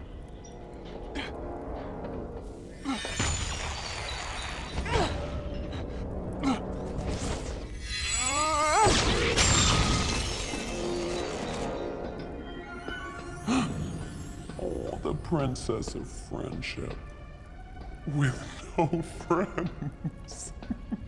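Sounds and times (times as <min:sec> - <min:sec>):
crashing and shattering effects: 0:03.0 - 0:04.9, 0:06.8 - 0:11.9
soundtrack music: 0:10.2 - 0:21.0.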